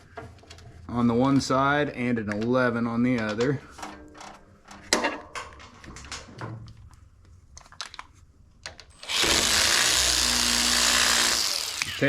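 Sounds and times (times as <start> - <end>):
cordless power tool running: 9.0 - 12.0.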